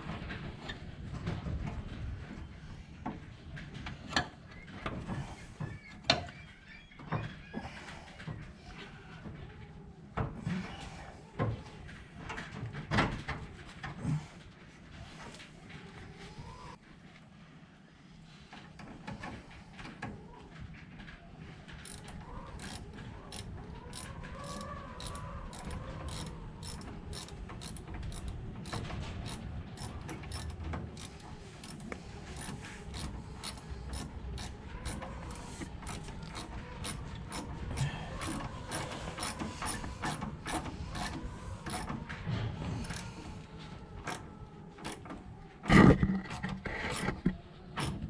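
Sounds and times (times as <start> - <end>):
ratchet wrench clicking: 22.6 - 31.8, 32.4 - 37.5.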